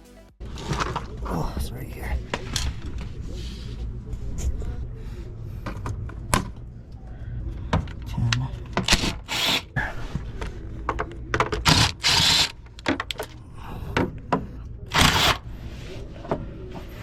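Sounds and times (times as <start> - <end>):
car parts and tools clicking: 10.4 - 13.4.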